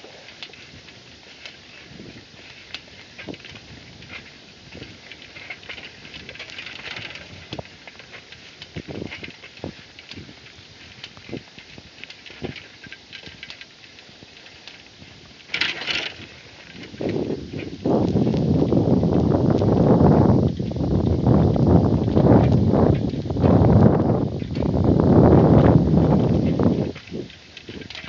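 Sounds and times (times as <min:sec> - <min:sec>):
rustling scrape: 0:00.0 - 0:18.6
horse hooves walking: 0:00.0 - 0:28.0
leather saddle creaking: 0:00.0 - 0:28.0.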